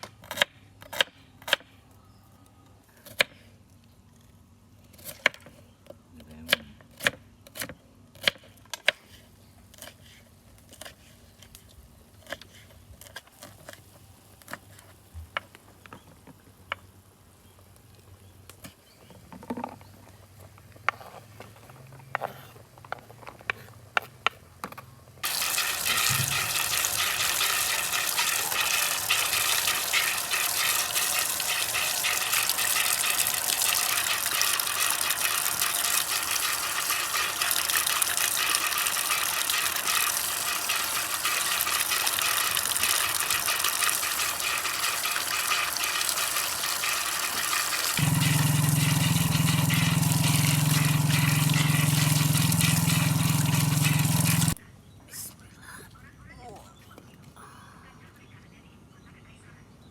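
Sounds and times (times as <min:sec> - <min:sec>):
water running from a tap: 0:25.2 - 0:54.6
steady low hum: 0:48.0 - 0:54.6.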